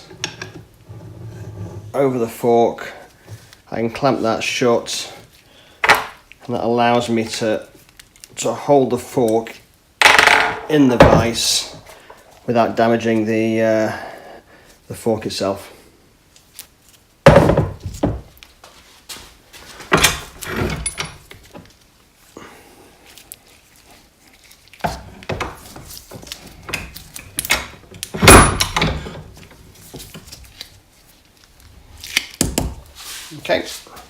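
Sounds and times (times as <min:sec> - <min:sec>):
scraping and rustling: 0:32.8 - 0:34.0.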